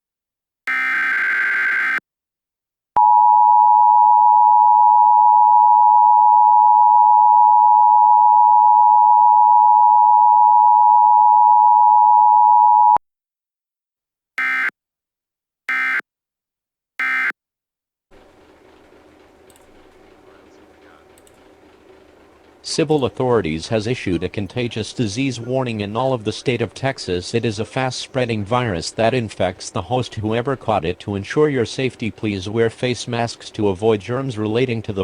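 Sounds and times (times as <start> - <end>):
screechy data tone bursts: 0.7 - 2.0, 15.7 - 16.0, 17.0 - 17.3.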